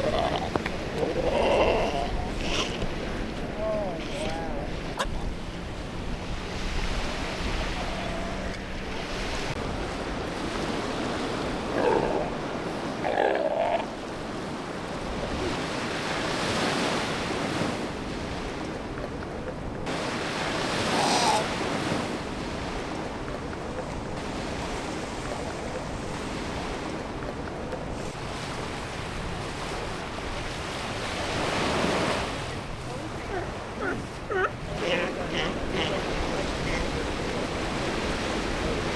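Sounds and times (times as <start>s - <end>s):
short animal calls: 0.0s - 5.4s, 20.8s - 21.6s, 33.1s - 37.3s
surf washing ashore: 0.0s - 38.9s
wind: 0.0s - 38.9s.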